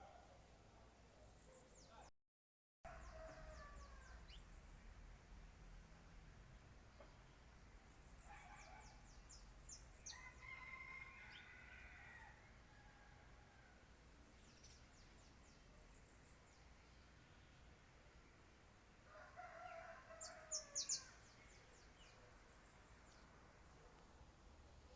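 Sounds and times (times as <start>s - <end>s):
faint rooster crowing: 2.9s - 4.4s, 10.0s - 13.9s, 19.0s - 21.3s
small birds chirping: 14.3s - 17.6s.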